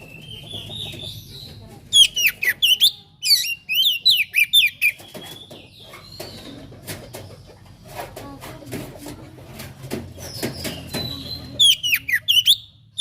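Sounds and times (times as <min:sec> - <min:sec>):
bird singing whistled notes: 0:10.7 - 0:13.0.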